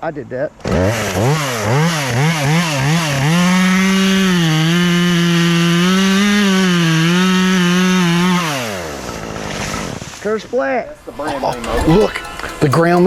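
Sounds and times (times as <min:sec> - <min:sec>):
chainsaw revving: 0:00.6 - 0:10.6.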